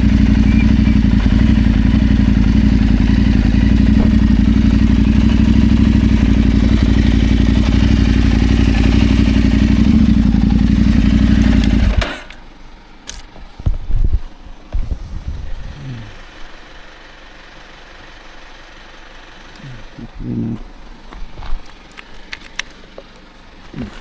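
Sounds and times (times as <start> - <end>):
motorcycle engine running: 0.0 - 24.0
road and wind noise: 0.0 - 24.0.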